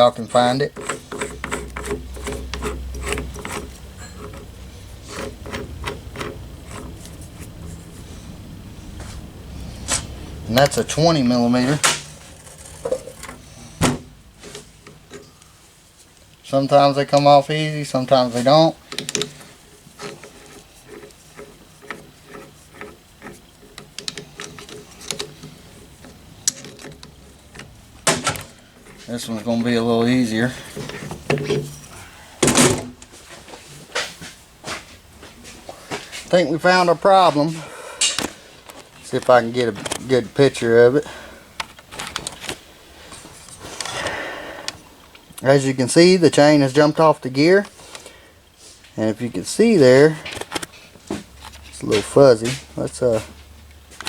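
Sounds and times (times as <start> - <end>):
hand ratchet clicking: 0.0 - 7.6, 18.9 - 27.8
metal rubbing and scraping: 0.0 - 16.2, 17.3 - 28.1, 28.7 - 32.2.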